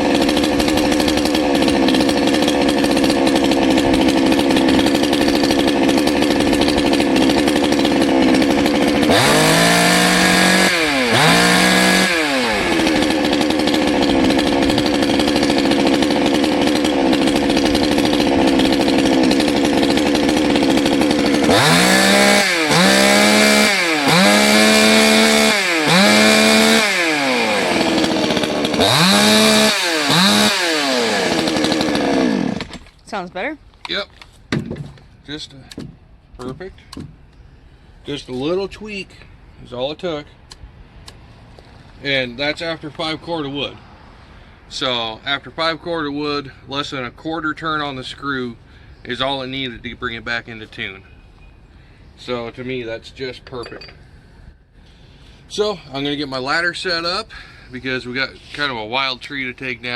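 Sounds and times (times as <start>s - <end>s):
chainsaw idling and revving: 0.0s - 33.5s.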